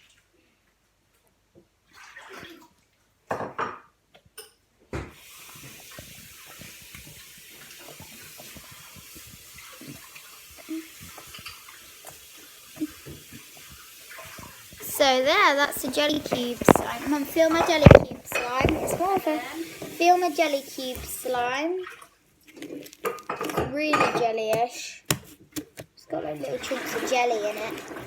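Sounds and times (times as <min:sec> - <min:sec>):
steady hiss: 0:05.2 - 0:21.5
slime squelching: 0:05.3 - 0:28.0
small wet clicks and pops: 0:05.6 - 0:19.5, 0:21.8 - 0:23.7.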